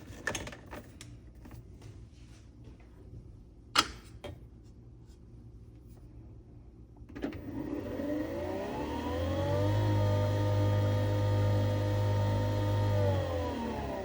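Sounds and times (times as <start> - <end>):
coffee machine whirring: 7.2 - 14.0.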